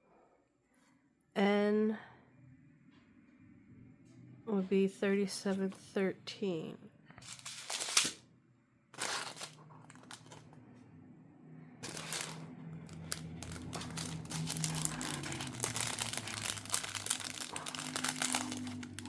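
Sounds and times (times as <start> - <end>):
plastic bags crinkling: 7.2 - 8.2, 9.0 - 10.5, 11.8 - 19.0.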